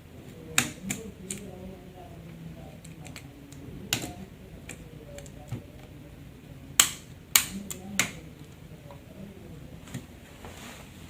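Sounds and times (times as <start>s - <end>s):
plastic clicks and snaps: 2.8s - 5.9s, 6.8s - 9.0s.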